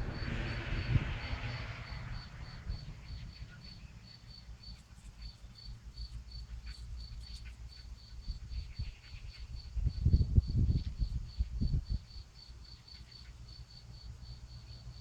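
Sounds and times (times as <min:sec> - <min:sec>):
low rumble: 0:00.0 - 0:04.7
insect chirping: 0:00.0 - 0:15.0.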